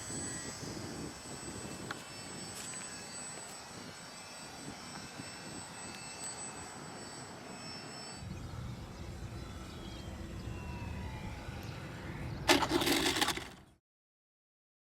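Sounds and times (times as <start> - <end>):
wind rumble on microphone: 0.0 - 2.6
rc plane motor whine: 0.0 - 13.7.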